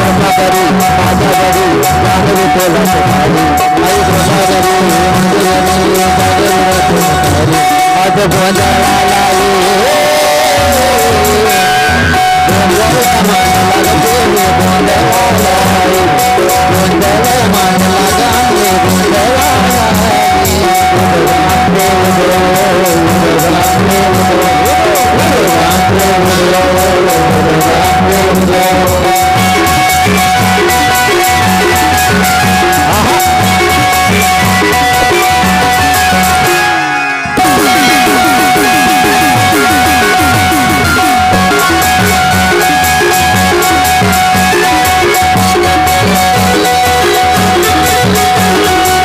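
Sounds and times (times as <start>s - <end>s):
fast steady drumbeat: 0.0s - 36.8s, 37.4s - 49.0s
wavering melody line: 30.4s - 49.0s
held drone tone: 30.6s - 48.8s.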